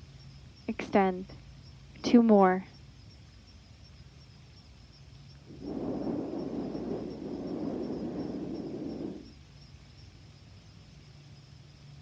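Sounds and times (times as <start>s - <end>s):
deep breathing: 5.5s - 9.3s.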